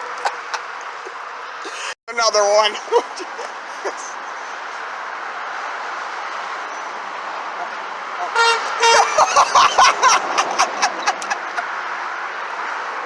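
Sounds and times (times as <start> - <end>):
road traffic: 0.0 - 13.0
truck horn blasts: 8.2 - 9.2.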